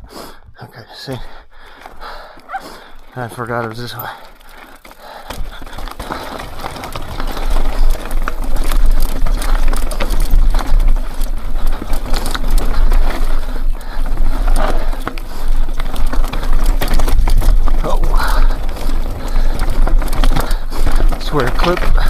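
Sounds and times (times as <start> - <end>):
bike rattling over rocky trail: 0.8 - 22.0.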